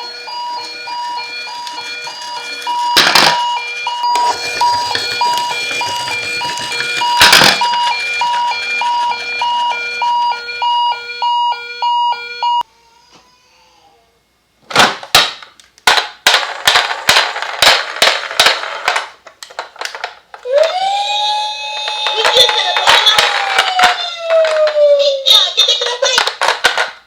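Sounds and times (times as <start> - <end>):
toy electronic siren beeping: 0.0 - 12.6, 20.5 - 24.8.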